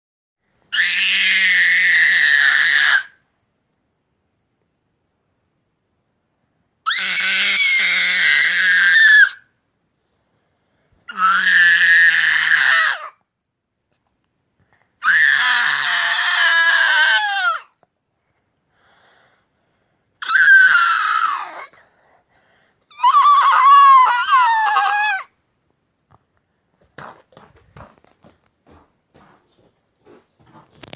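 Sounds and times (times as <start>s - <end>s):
boy screeching dinosaur roars: 0.8s - 3.1s, 6.9s - 9.4s, 11.1s - 13.2s, 15.0s - 17.7s, 23.0s - 25.3s.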